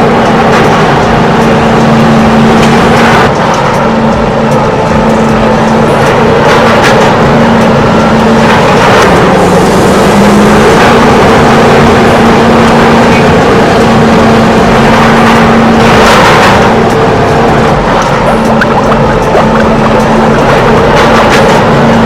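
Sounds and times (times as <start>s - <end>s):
engine running with low hum: 0.0s - 22.0s.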